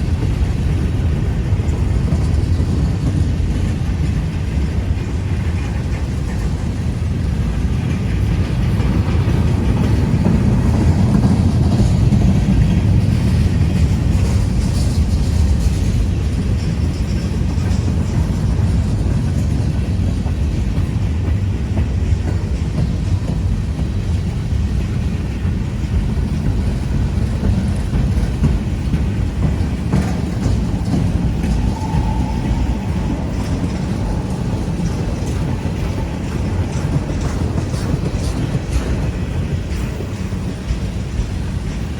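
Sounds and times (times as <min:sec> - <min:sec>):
train cars rumbling: 0:00.0 - 0:41.9
wheels clacking over rail joints: 0:00.0 - 0:41.9
high squeal: 0:30.7 - 0:36.6.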